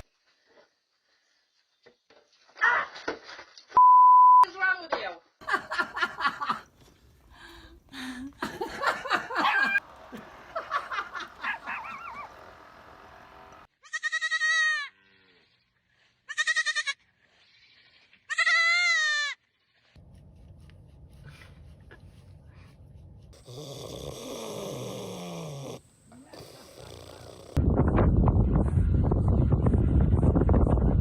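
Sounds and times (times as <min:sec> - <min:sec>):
farm animal bleating: 0:13.7 - 0:15.6, 0:16.2 - 0:19.9.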